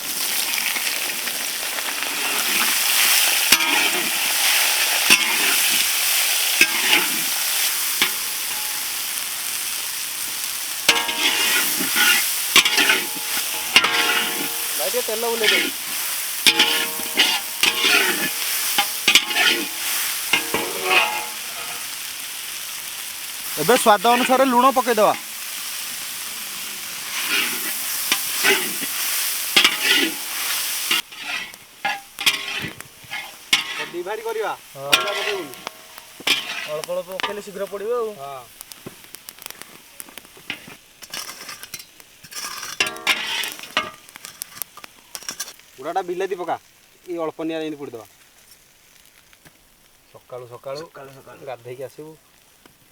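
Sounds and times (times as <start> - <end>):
food sizzling in hot oil: 0.0 - 52.9
metal spatula scraping a pan: 0.2 - 9.7, 10.8 - 22.3, 23.5 - 37.8, 40.4 - 45.6.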